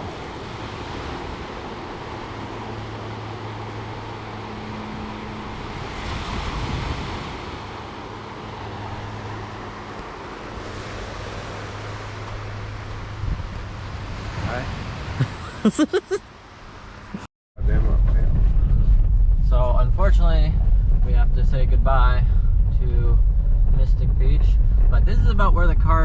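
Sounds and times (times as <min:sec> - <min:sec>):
ocean surf washing in: 0:00.0 - 0:17.0
steady low hum: 0:17.6 - 0:26.0.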